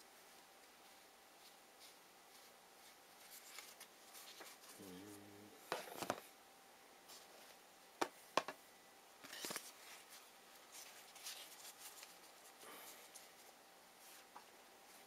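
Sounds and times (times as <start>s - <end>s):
faint card shuffling: 0.2s - 6.3s, 9.2s - 15.0s
cards rustling: 1.4s - 6.3s, 9.2s - 14.4s.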